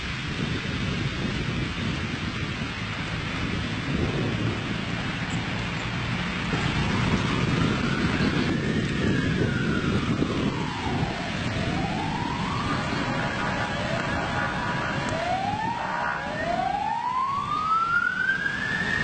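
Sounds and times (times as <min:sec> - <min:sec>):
wind buffeting microphone: 0:00.0 - 0:19.0
emergency siren wailing: 0:05.9 - 0:19.0.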